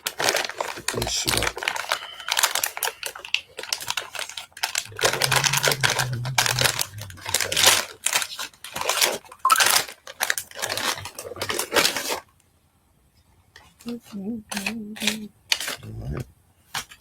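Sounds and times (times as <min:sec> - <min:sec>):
packaging torn and crinkled: 0:00.0 - 0:05.8, 0:06.5 - 0:12.3.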